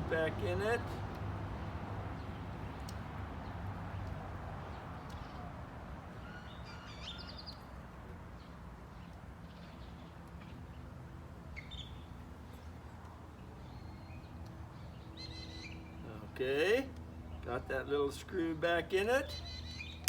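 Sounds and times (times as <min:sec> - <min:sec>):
low outdoor background noise: 0:00.0 - 0:20.0
bird chirps: 0:06.2 - 0:07.7, 0:13.6 - 0:16.0, 0:19.2 - 0:20.0.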